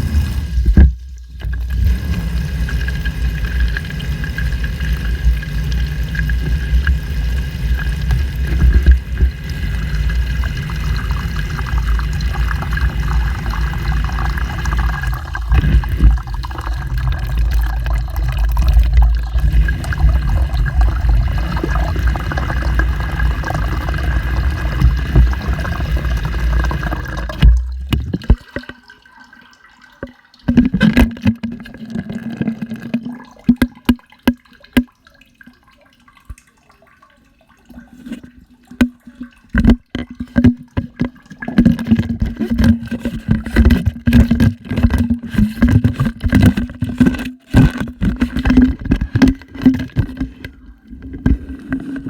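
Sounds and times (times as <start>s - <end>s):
low steady hum: 0.0s - 28.5s
washing machine water sloshing: 0.0s - 52.0s
knocks and clunks: 26.7s - 28.8s, 30.0s - 34.9s, 38.8s - 52.0s.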